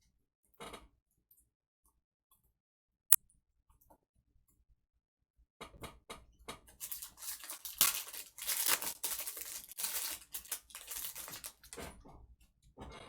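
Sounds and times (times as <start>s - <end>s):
foil wrapper tearing and crinkling: 6.7s - 11.8s.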